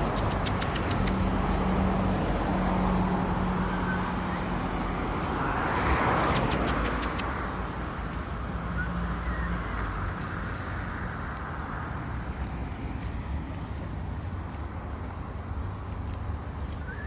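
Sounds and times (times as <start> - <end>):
car passing close by: 0.0 - 12.8
low traffic rumble: 0.0 - 17.0.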